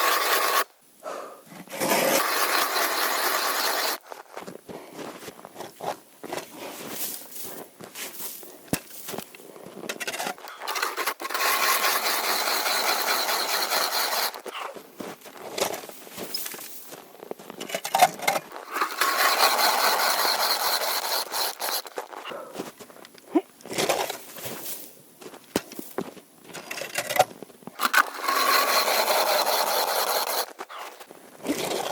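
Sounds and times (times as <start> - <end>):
ice and snow being scraped: 0.0 - 0.7, 1.7 - 4.0, 10.2 - 14.4, 18.6 - 22.2, 27.8 - 31.9.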